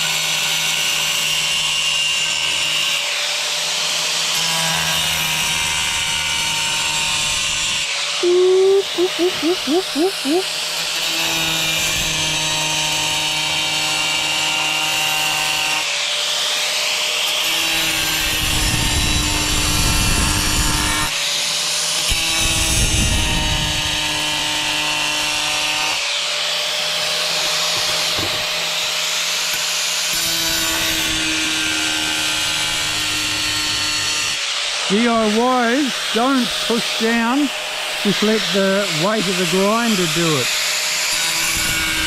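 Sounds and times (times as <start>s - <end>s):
angle grinder cutting tile: 0.0s - 8.0s, 8.6s - 42.0s.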